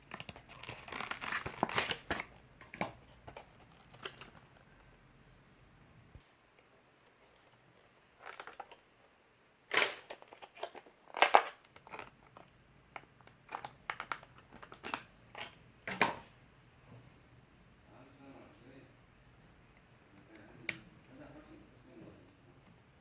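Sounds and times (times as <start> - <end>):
crinkling rustles: 0.0 - 5.0, 7.1 - 8.9, 9.8 - 12.6, 13.2 - 15.6.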